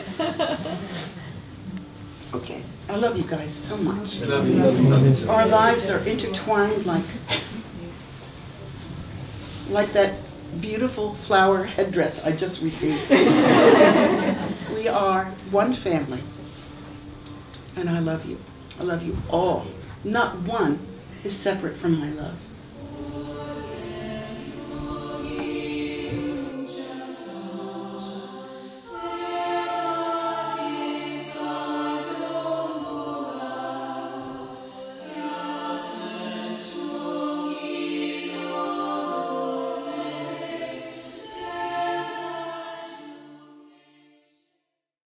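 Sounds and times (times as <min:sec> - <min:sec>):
choir singing in harmony: 0:00.0 - 0:44.5.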